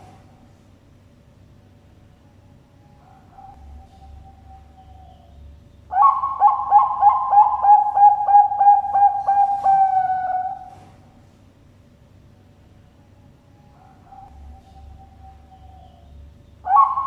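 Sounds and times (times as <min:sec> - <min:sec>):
dove cooing: 0:02.9 - 0:05.3, 0:05.9 - 0:11.2, 0:13.7 - 0:17.0.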